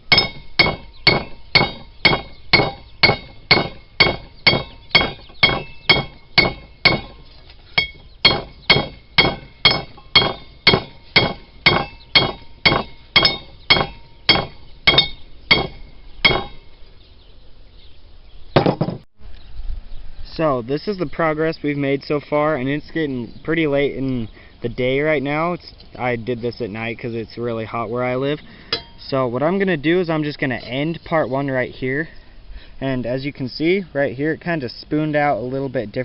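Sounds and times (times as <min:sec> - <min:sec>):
hammer striking metal on anvil: 0:00.1 - 0:07.2, 0:07.8 - 0:16.6, 0:28.7 - 0:29.0.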